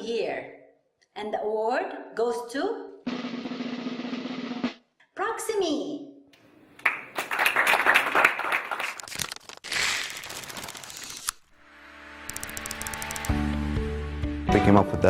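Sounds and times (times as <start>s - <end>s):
audience applauding: 6.8s - 9.1s
soft music: 11.6s - 15.0s.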